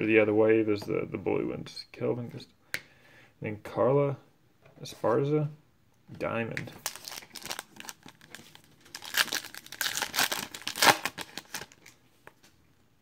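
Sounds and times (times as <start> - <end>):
wrapper torn and crinkled: 6.8 - 12.0.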